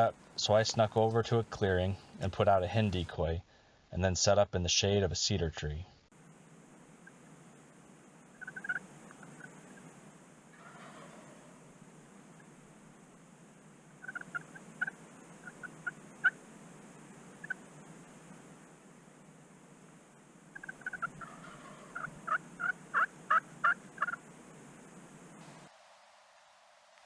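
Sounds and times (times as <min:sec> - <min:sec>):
turkey calling: 0:08.3 - 0:09.9, 0:10.5 - 0:11.6, 0:14.0 - 0:16.4, 0:17.3 - 0:17.7, 0:20.5 - 0:24.2.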